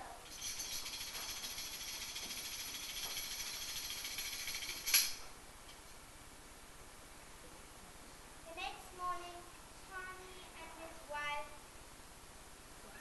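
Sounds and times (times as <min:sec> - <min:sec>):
jingling percussion shaken: 0:00.0 - 0:05.3.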